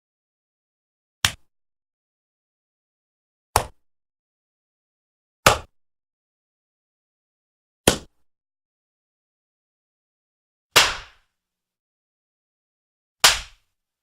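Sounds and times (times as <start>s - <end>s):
slap sound effect: 5.4s - 5.7s, 10.8s - 11.2s, 13.2s - 13.6s.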